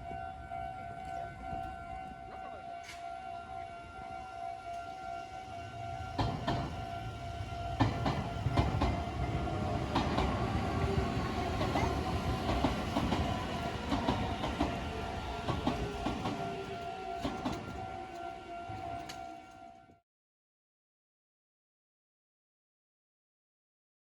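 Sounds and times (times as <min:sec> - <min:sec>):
level crossing warning bell: 0:00.0 - 0:19.8
train wheels clacking over rail joints: 0:06.1 - 0:19.3.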